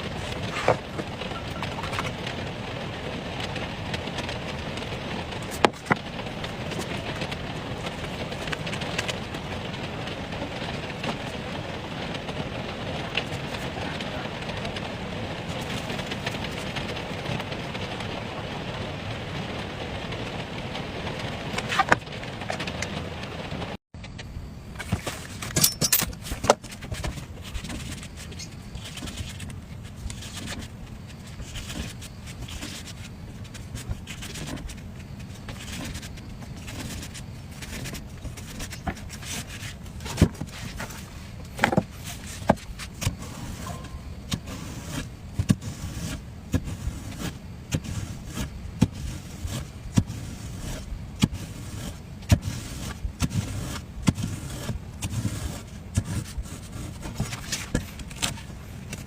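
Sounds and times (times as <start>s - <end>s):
low background rumble: 0.0s - 59.0s
knife scraping watermelon rind: 24.9s - 59.0s.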